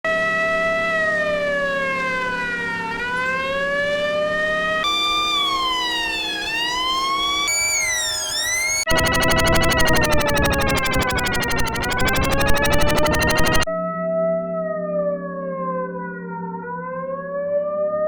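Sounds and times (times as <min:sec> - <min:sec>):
car siren wail: 0:04.9 - 0:13.6.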